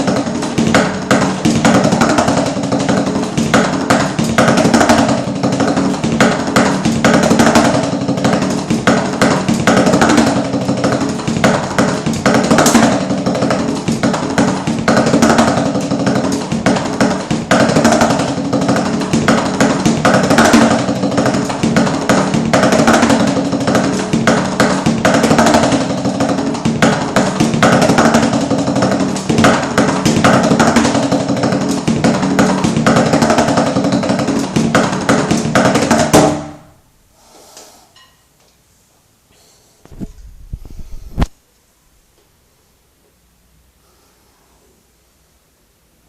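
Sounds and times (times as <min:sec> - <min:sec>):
drum kit playing: 0:00.0 - 0:36.8.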